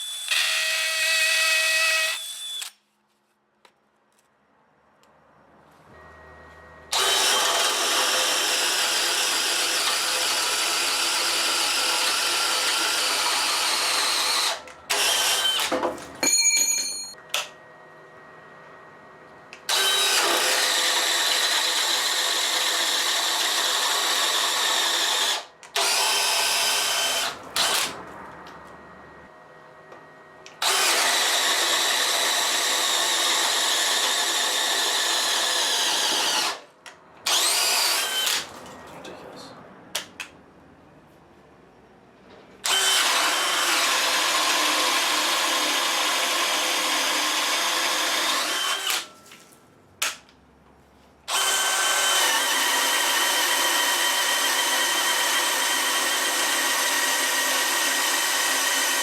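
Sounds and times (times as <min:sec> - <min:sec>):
hammer drill running: 0:00.0 - 0:02.7, 0:06.9 - 0:15.8, 0:19.7 - 0:27.9, 0:30.6 - 0:36.6, 0:37.3 - 0:38.4, 0:42.6 - 0:49.1, 0:51.3 - 0:59.0
high drill whine: 0:00.0 - 0:02.7, 0:06.9 - 0:15.7, 0:19.7 - 0:27.9, 0:30.6 - 0:36.6, 0:37.3 - 0:38.4, 0:42.6 - 0:49.1, 0:51.3 - 0:59.0.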